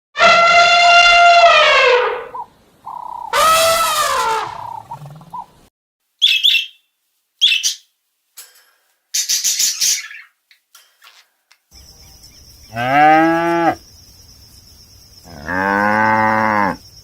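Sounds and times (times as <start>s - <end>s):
animal call falling in pitch: 0.2s - 2.5s, 3.2s - 5.2s
bird chirps: 2.4s - 3.4s, 6.2s - 7.9s, 9.1s - 10.6s, 11.7s - 13.1s.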